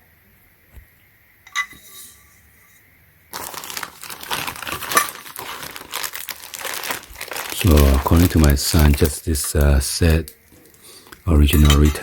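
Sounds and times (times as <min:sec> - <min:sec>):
plastic packaging crinkling: 0:03.3 - 0:12.0.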